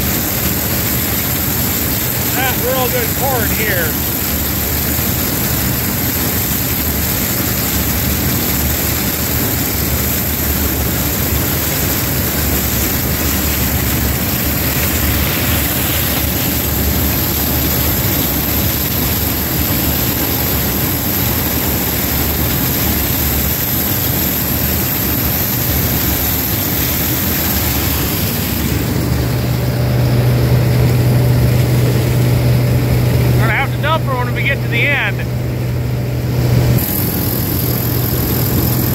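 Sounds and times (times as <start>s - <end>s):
combine harvester droning: 0.0s - 7.6s, 9.0s - 38.9s
strong low hum: 25.6s - 38.9s.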